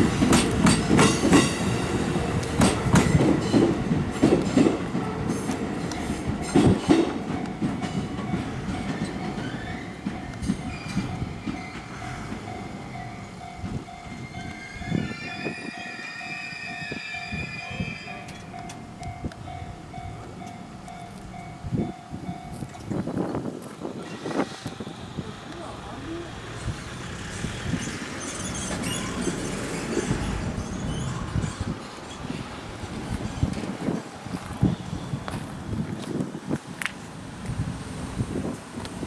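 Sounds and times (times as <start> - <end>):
crossing warning bell ringing: 0.0 - 36.0
train wheels clacking on rails: 0.0 - 39.0
high squeal: 9.4 - 12.3, 14.1 - 18.6, 27.3 - 33.5.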